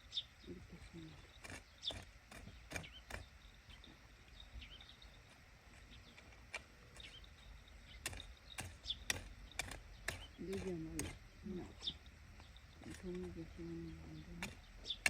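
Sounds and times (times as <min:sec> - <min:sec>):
small birds chirping: 0:00.0 - 0:15.0
sharp clicks from hands working: 0:08.0 - 0:11.2.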